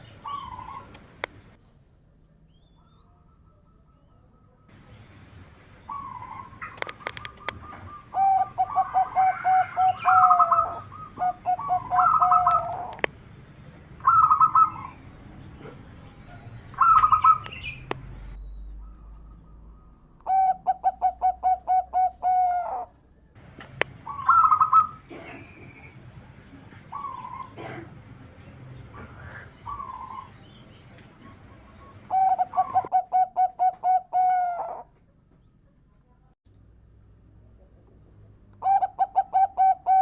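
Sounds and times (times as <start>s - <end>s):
dove cooing: 0.0s - 1.0s, 5.8s - 13.1s, 14.0s - 15.0s, 16.8s - 17.6s, 20.2s - 22.9s, 24.0s - 25.9s, 26.7s - 28.0s, 28.9s - 30.4s, 31.1s - 34.9s, 38.6s - 40.0s
sharp clicks: 6.6s - 7.6s.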